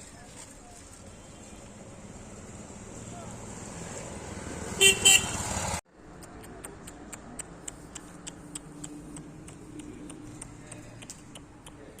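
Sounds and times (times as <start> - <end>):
loud honks: 4.8 - 5.6
sharp ticks: 6.1 - 12.0.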